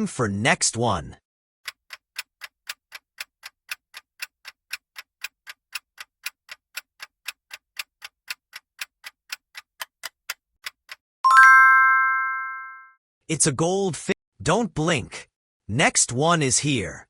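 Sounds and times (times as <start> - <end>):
clock ticking: 1.6 - 11.5.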